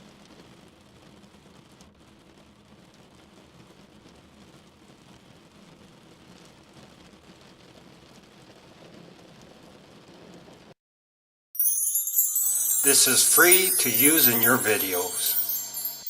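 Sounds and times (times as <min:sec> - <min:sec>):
heavy rain falling: 0:00.0 - 0:10.7.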